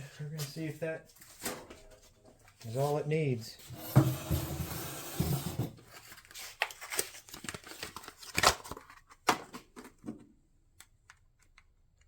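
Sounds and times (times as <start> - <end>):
packaging crinkling and tearing: 5.9 - 9.5.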